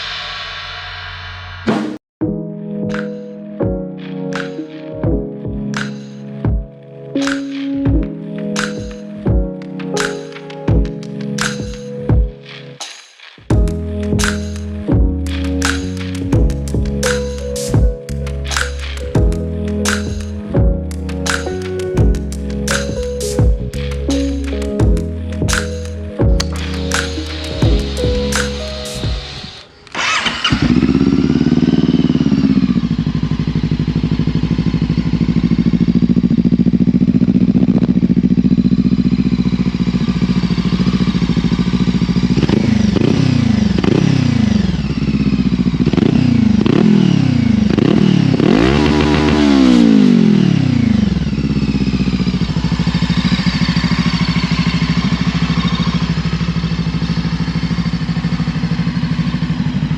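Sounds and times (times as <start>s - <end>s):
engine revving: 26.4s - 59.9s
motorcycle engine idling: 29.0s - 59.9s.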